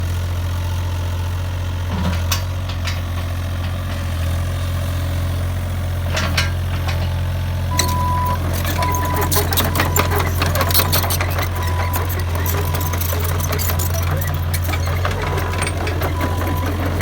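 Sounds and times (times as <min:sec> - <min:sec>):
diesel engine idling: 0:02.5 - 0:17.0
reversing beep: 0:07.7 - 0:17.0.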